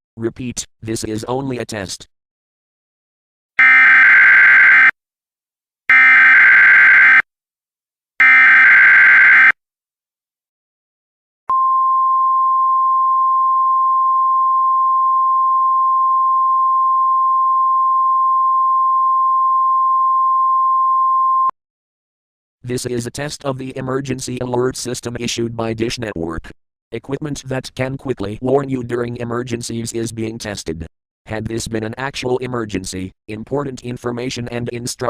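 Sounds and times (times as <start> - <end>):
steady single-pitch alert tone: 3.6 - 4.9, 5.9 - 7.2, 8.2 - 9.6.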